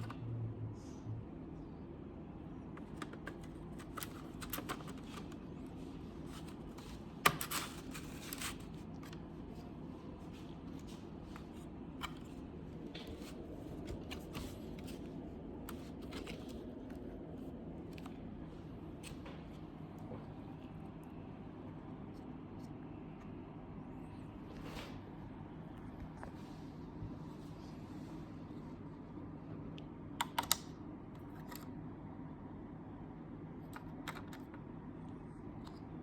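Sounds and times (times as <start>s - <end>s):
steady low hum: 0.0s - 36.0s
hands clicking and scraping computer parts: 2.7s - 9.7s, 10.3s - 17.2s, 33.7s - 34.7s
clatter of computer parts: 2.8s - 5.4s, 6.3s - 9.2s.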